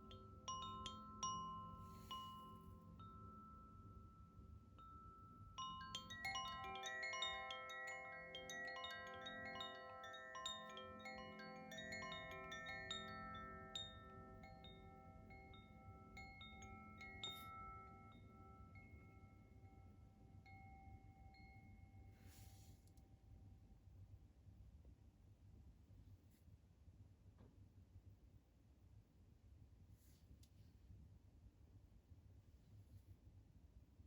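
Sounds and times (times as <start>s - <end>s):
wind chime ringing: 0.0s - 22.5s.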